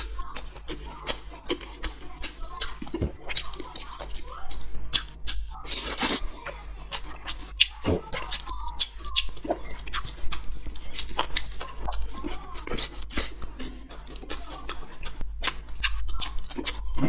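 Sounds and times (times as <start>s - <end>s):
chewing: 0.0s - 17.0s.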